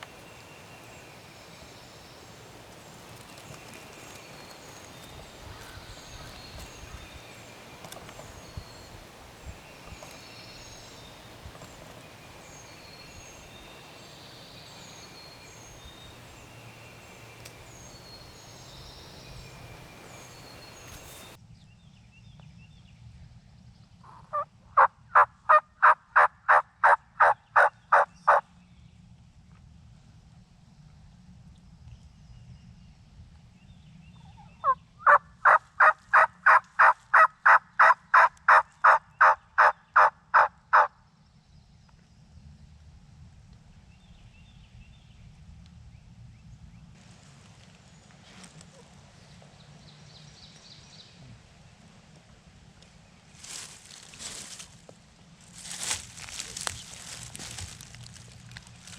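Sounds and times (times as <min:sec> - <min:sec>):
background hiss: 0:00.0 - 0:21.4
high bird chirps: 0:00.0 - 0:21.4
turkey yelps: 0:24.1 - 0:28.4, 0:34.6 - 0:40.9.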